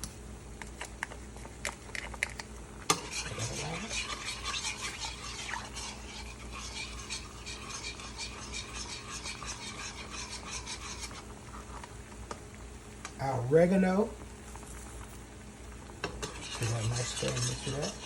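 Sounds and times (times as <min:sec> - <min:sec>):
utensil scraping a pan: 0:02.9 - 0:11.8, 0:16.0 - 0:18.0.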